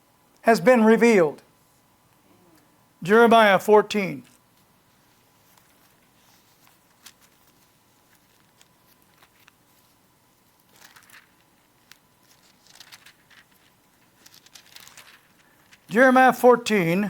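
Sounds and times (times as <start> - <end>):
paper pages rustling: 4.5 - 15.9.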